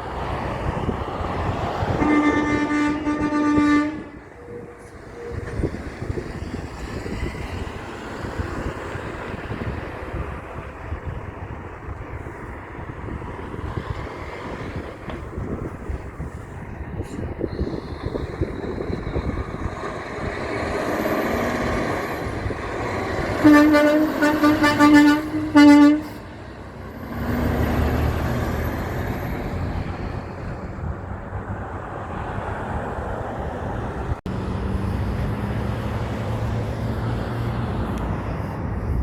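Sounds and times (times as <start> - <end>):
heavy trucks driving past: 0.0 - 39.0
truck horn toots: 1.9 - 5.7, 23.2 - 26.3.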